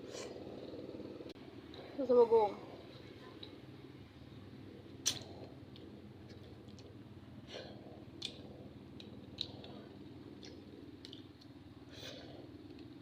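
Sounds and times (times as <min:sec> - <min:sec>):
chewing with small crunches: 0:04.9 - 0:13.0.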